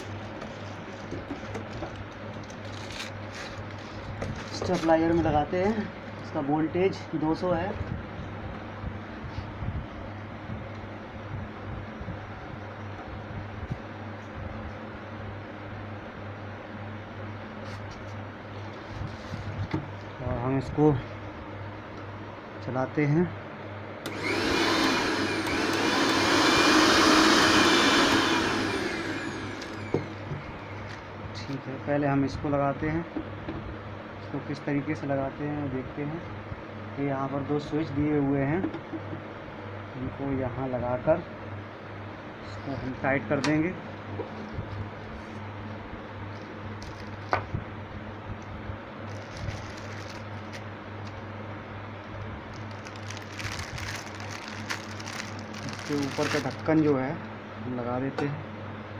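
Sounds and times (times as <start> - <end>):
steady low hum: 0.0 - 58.9
mixer grinder motor whining: 24.0 - 31.0.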